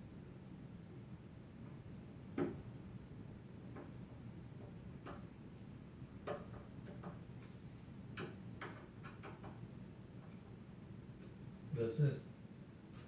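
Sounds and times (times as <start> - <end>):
faint clicks and knocks on wood: 3.7 - 7.3, 8.1 - 9.6.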